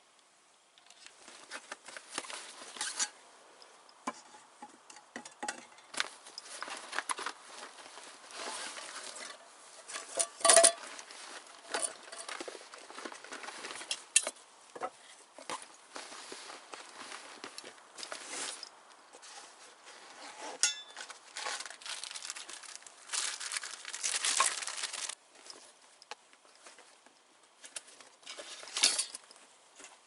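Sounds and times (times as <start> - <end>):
cooking gear rustling and clattering: 0.8 - 30.0
ringing metallic clank: 20.6 - 21.0.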